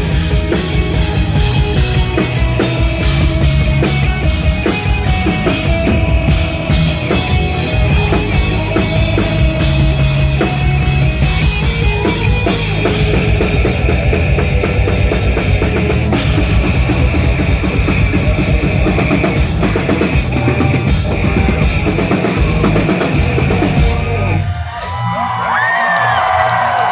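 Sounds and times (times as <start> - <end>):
rock band playing live: 0.0 - 25.0
pounding drum kit: 0.0 - 25.2
crowd cheering and whooping: 23.5 - 26.9.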